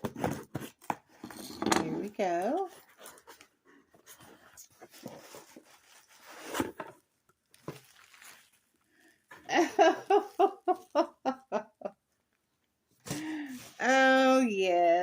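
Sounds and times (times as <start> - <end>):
cardboard box rustling: 2.6 - 8.7.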